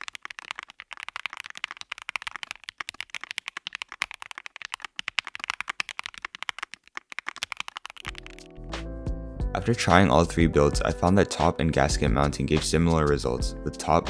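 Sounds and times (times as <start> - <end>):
mechanical keyboard typing: 0.0 - 8.5.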